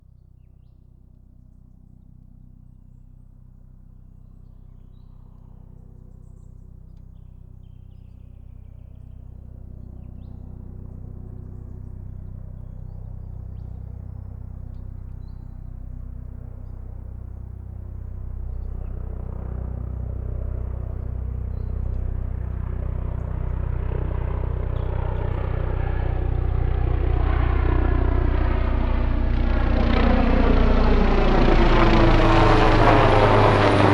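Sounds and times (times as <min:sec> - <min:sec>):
helicopter rotor beat: 0:09.1 - 0:33.9.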